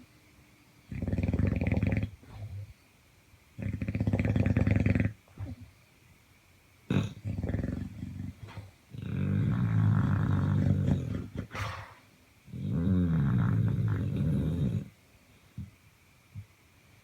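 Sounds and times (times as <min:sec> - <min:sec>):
pet snoring: 0:00.9 - 0:02.7, 0:03.6 - 0:05.6, 0:06.9 - 0:14.9.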